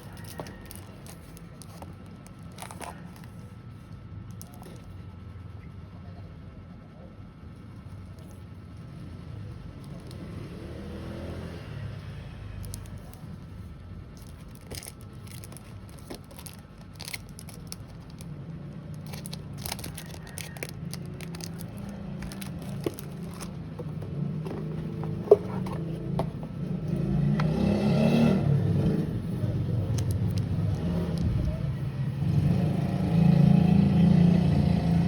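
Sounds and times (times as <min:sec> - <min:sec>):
packaging crinkling and scraping: 0:00.0 - 0:03.6, 0:12.6 - 0:27.0, 0:29.2 - 0:31.6.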